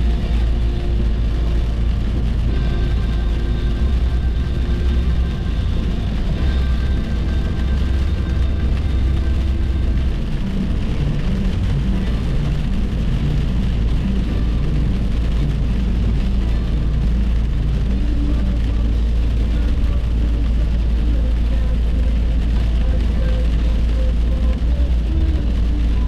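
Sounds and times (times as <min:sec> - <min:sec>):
car engine rumble: 0:00.0 - 0:26.0
tyres hissing on road: 0:00.0 - 0:26.0.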